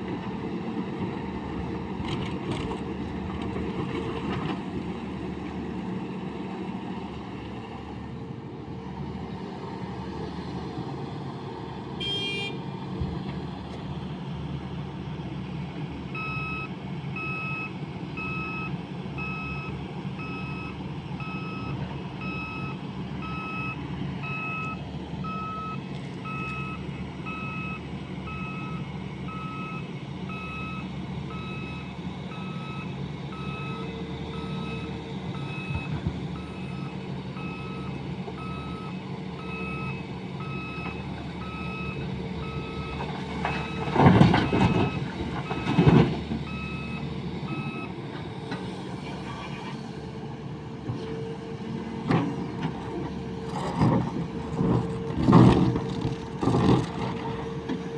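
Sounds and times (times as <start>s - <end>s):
diesel engine running: 0.0s - 57.9s
reversing alarm beeping: 16.2s - 45.8s, 46.4s - 47.9s.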